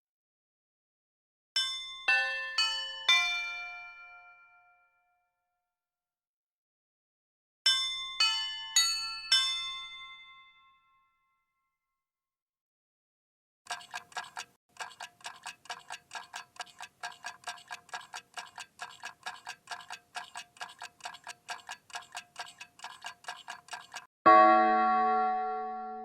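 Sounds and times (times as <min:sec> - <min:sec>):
mantel clock ticking: 0:13.7 - 0:24.1.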